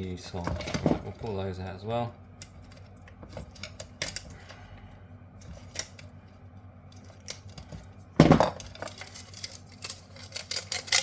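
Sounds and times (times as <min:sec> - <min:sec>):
metal parts clinking: 0:08.2 - 0:11.0.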